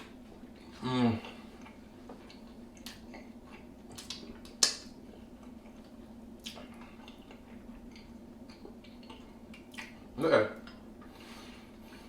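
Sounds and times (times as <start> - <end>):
faint steady hum: 0.0 - 12.0
wet chewing and lip smacks: 1.6 - 11.1.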